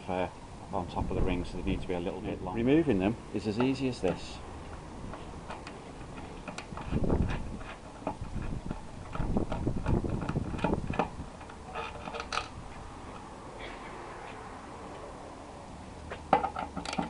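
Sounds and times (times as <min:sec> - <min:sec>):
dull handling noise: 0:03.6 - 0:13.3
metallic clicks and knocks: 0:05.1 - 0:12.6, 0:16.2 - 0:17.0.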